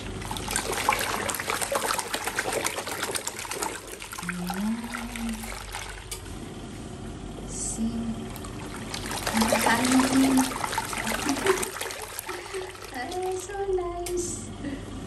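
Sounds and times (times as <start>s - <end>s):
water trickling into drain: 0.0s - 6.2s, 8.3s - 13.6s.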